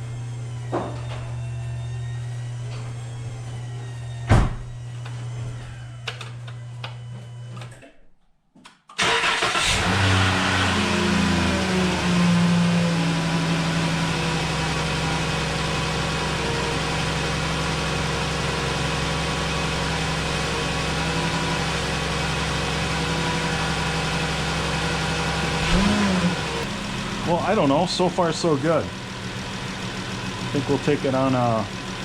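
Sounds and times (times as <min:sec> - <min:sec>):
car engine idling: 0:09.0 - 0:32.0
person speaking: 0:30.5 - 0:31.7.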